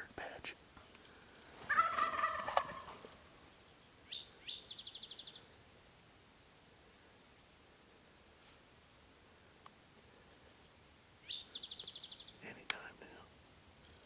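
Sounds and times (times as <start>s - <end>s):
songbird chirps and trill: 0.2s - 5.6s, 10.3s - 14.0s
turkey gobbling: 1.7s - 3.2s.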